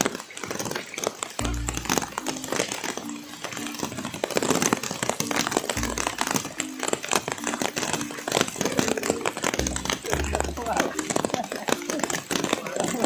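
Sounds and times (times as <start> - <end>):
crackle of sharp clicks: 0.0 - 13.0
background music: 1.4 - 13.0.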